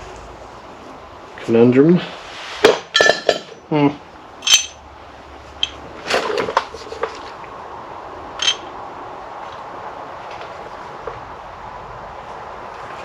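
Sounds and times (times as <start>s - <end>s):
metal clatter: 2.6s - 3.6s, 4.4s - 4.8s, 8.4s - 8.7s
metal tools clinking: 2.9s - 3.7s, 4.4s - 4.8s, 5.6s - 5.8s, 8.4s - 8.7s.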